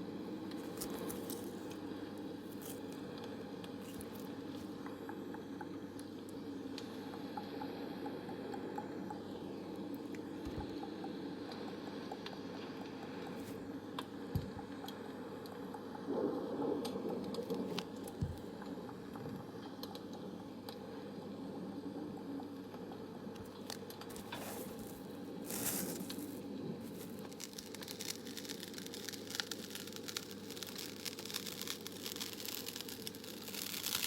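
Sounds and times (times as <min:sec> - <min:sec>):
asmr crinkling: 0:00.4 - 0:04.8, 0:23.4 - 0:34.0
low white noise: 0:13.1 - 0:34.0.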